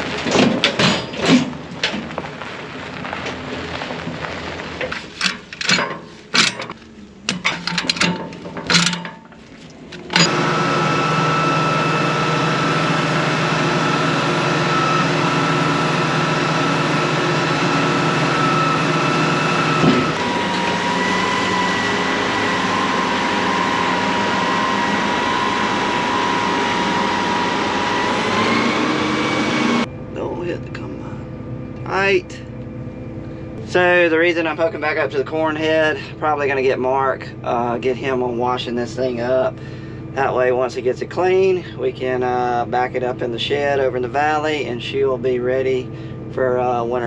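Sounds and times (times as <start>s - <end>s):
vehicle engine running: 9.4s - 47.0s.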